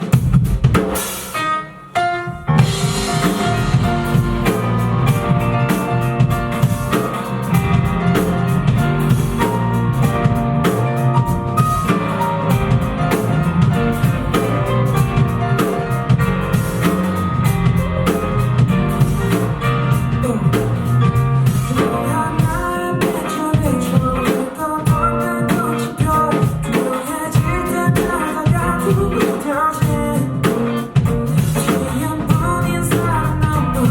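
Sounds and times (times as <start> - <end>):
live rock band playing: 0.0 - 33.9
person singing: 19.9 - 33.9.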